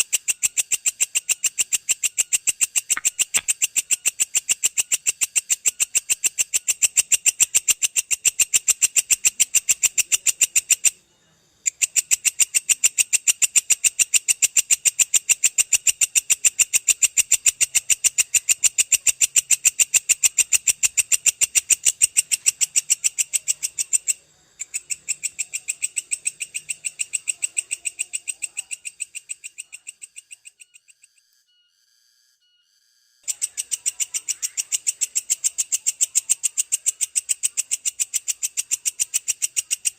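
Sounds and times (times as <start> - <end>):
insect rattling trills: 0.0 - 10.9, 11.6 - 31.5, 32.7 - 39.9.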